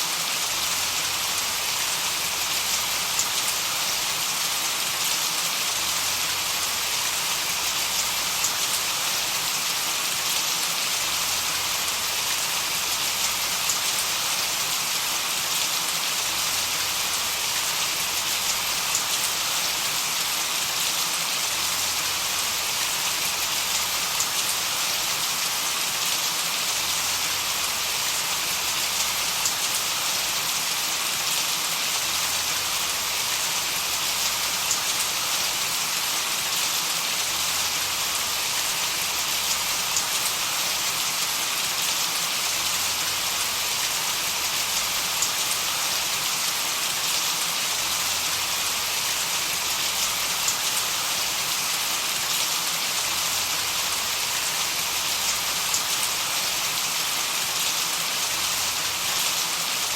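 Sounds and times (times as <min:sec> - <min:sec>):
rain-like white noise: 0:00.0 - 0:59.9.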